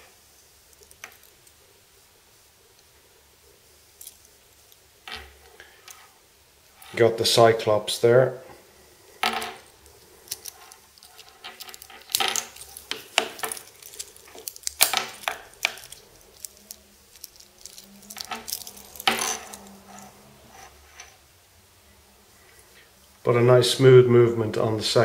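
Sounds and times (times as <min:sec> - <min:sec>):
metal watch bracelet clinking: 0:10.2 - 0:20.2.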